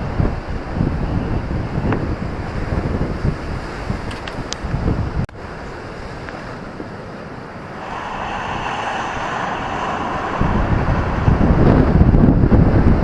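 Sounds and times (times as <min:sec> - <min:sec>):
ocean surf washing on beach: 0:00.0 - 0:13.0
wind buffeting microphone: 0:00.0 - 0:13.0
deep rumble: 0:07.6 - 0:13.0.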